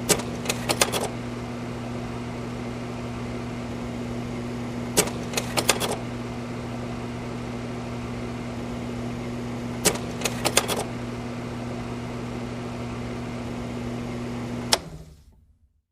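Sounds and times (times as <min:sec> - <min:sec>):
slide projector fan hum: 0:00.0 - 0:15.4
slide-change mechanism clacking: 0:00.1 - 0:01.1, 0:05.0 - 0:06.0, 0:09.8 - 0:10.9, 0:14.7 - 0:15.4.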